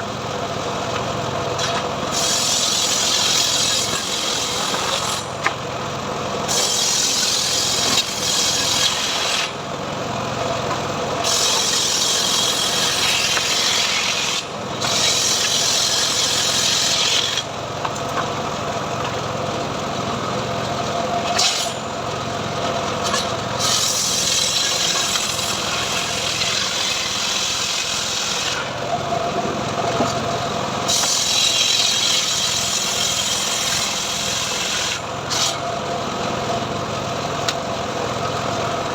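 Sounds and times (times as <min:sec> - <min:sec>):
sawmill engine running: 0:00.0 - 0:38.9
saw blade cutting wood: 0:01.6 - 0:05.5, 0:06.5 - 0:09.6, 0:11.2 - 0:17.5, 0:21.2 - 0:21.9, 0:23.0 - 0:28.8, 0:30.9 - 0:35.6.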